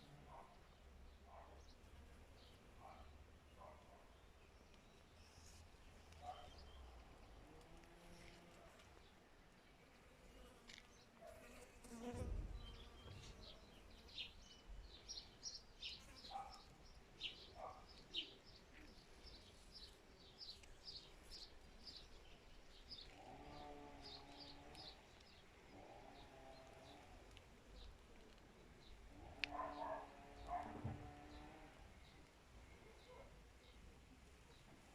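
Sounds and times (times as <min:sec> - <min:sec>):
low thump: 0:12.1 - 0:13.6.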